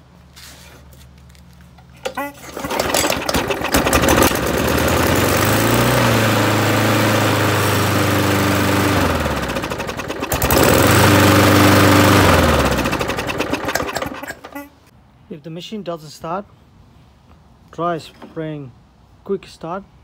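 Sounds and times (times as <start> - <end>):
lawn mower engine running: 2.0 - 14.6.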